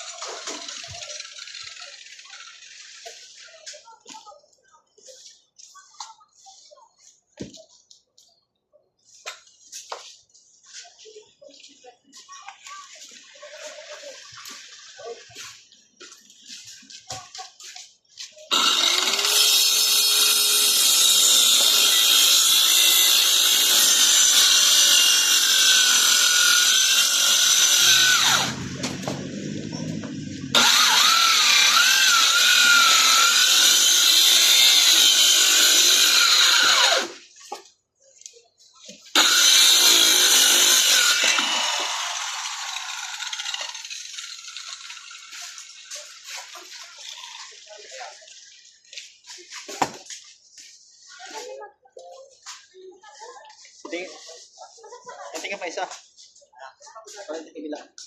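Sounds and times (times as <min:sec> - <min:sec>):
electric power tool cutting: 0:18.5 - 0:37.2, 0:39.1 - 0:47.6.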